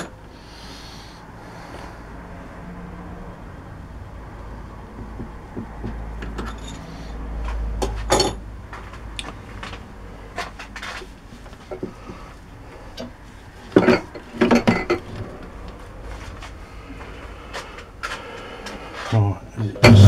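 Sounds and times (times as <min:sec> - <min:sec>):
metal clinks and knocks: 0:05.0 - 0:07.1, 0:07.8 - 0:08.5.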